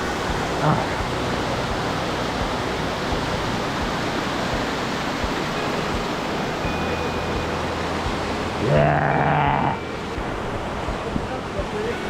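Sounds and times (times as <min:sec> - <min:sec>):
water rushing over rocks: 0:00.0 - 0:12.0.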